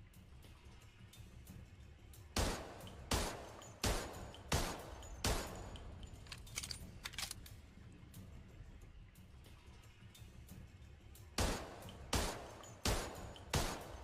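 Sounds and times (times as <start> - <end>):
pistol shots with echo: 2.4 - 5.8, 11.4 - 14.0
metallic clicks and clinks: 3.6 - 7.6.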